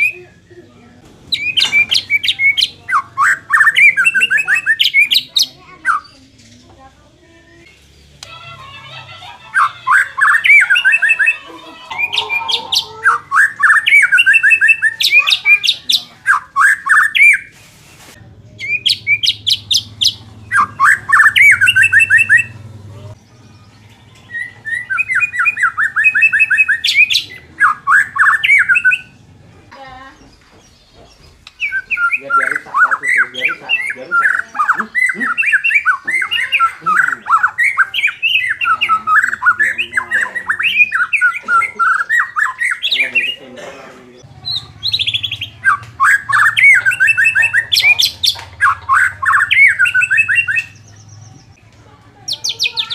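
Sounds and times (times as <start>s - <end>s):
songbird chattering and whistling: 0.0s - 6.8s, 7.7s - 17.6s, 18.5s - 43.7s, 44.4s - 52.9s.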